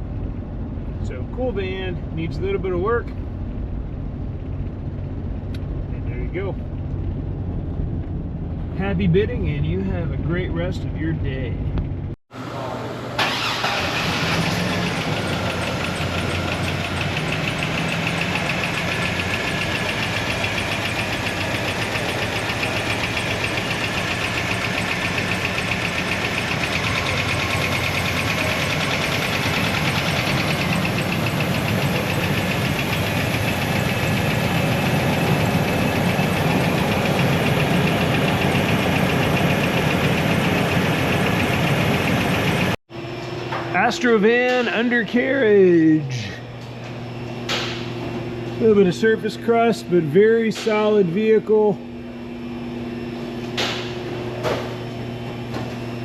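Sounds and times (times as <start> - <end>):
engine running with rhythmic pulsing: 1.7 - 12.2, 13.2 - 43.4, 51.8 - 56.0.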